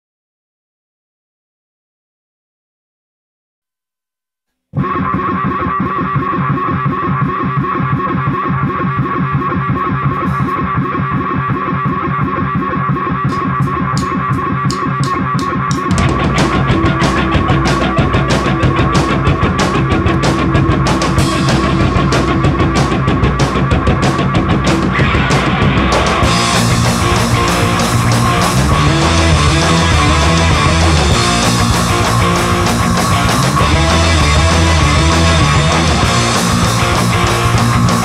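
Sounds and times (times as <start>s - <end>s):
electric guitar: 4.8s - 38.0s
rock band with drums and bass: 4.8s - 38.0s.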